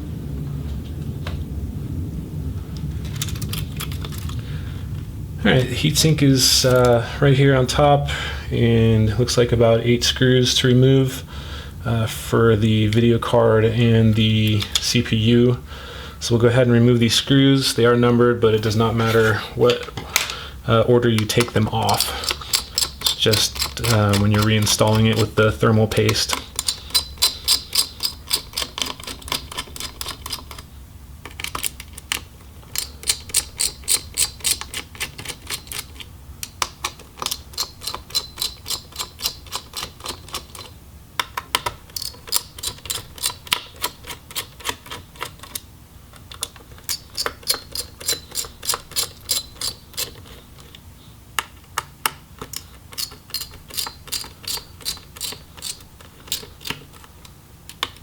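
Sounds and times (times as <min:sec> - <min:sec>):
screwdriver clicking: 0:21.2 - 0:50.8, 0:51.4 - 0:57.1, 0:57.7 - 0:58.0.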